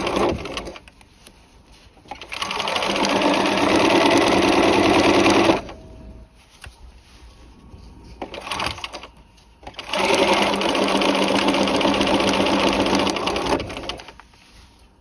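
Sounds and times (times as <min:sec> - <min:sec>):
sewing machine stitching: 0:00.0 - 0:00.8, 0:02.0 - 0:05.7, 0:08.2 - 0:14.2.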